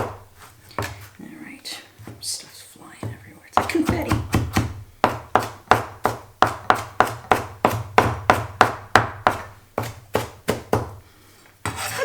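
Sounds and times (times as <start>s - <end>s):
knife chopping on cutting board: 0.0s - 1.1s, 3.0s - 11.0s.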